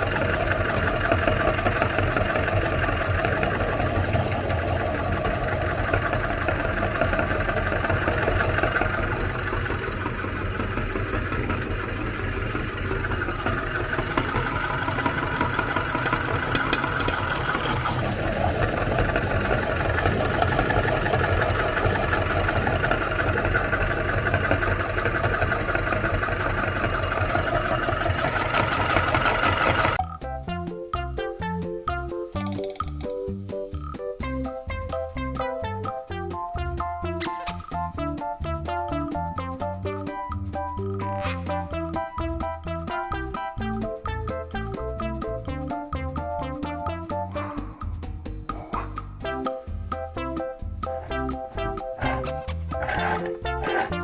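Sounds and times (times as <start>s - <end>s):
electric meat grinder motor running: 0.0s - 30.0s, 52.0s - 54.0s
music with a steady beat: 30.0s - 52.0s.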